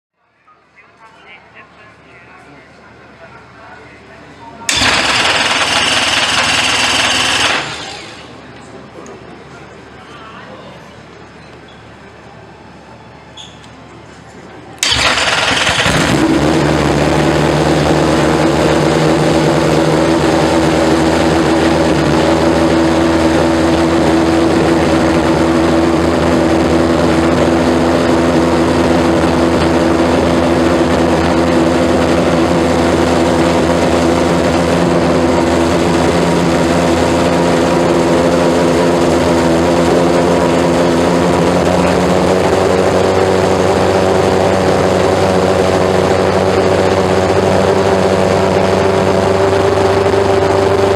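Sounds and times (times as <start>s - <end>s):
race car engine idling: 14.8s - 50.9s.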